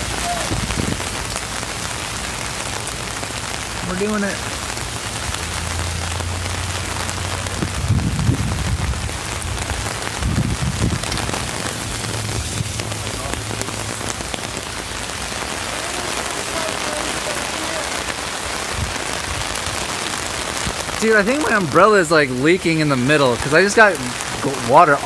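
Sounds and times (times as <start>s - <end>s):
rain pattering on umbrella: 0.0s - 25.0s
low thumps: 7.4s - 14.8s.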